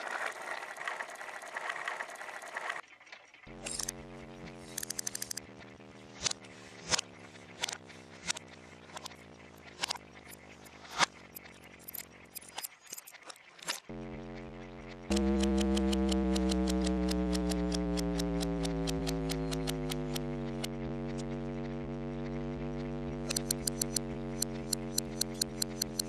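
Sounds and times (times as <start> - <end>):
guitar amplifier buzzing drone: 3.5 - 9.9, 13.9 - 26.0
clocks ticking: 3.8 - 5.5, 13.9 - 26.0.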